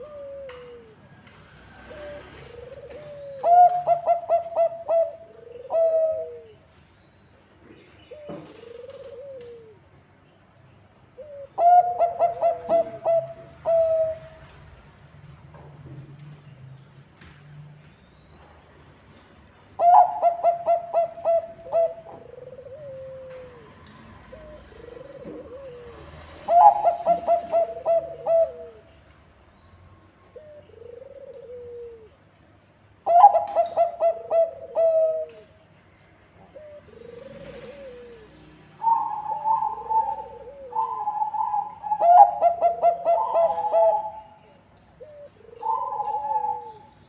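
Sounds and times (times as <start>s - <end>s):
dove cooing: 0.0s - 1.1s, 1.7s - 6.7s, 8.1s - 10.0s, 11.2s - 14.6s, 19.8s - 29.0s, 30.4s - 32.2s, 33.0s - 35.6s, 36.4s - 47.0s.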